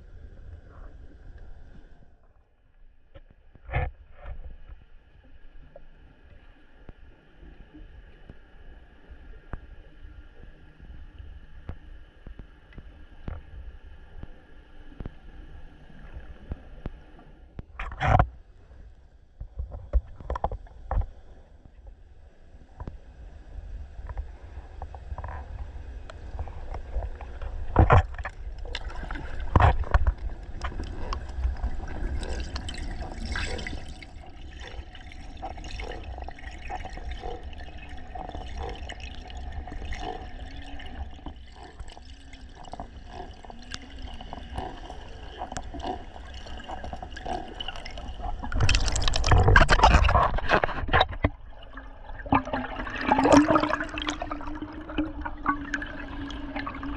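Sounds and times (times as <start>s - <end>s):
water gurgling and trickling: 22.8s - 56.9s
rushing surge of water: 47.6s - 56.9s.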